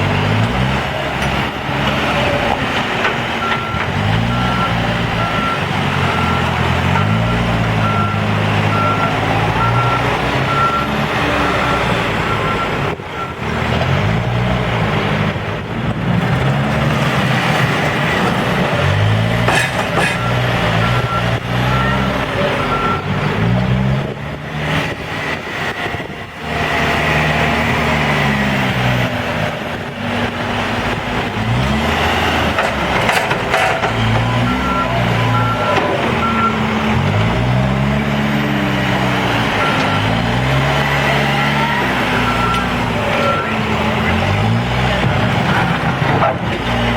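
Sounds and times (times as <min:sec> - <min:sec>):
backhoe digging dirt: 0:00.0 - 0:46.9
diesel engine revving: 0:00.0 - 0:46.9
reversing alarm beeping: 0:03.4 - 0:13.5, 0:19.9 - 0:23.1, 0:33.5 - 0:36.7, 0:39.4 - 0:40.2, 0:41.3 - 0:43.7.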